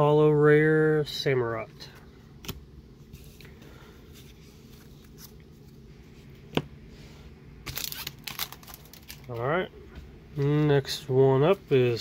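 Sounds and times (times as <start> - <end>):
cards rustling: 3.2 - 5.8, 7.7 - 9.5.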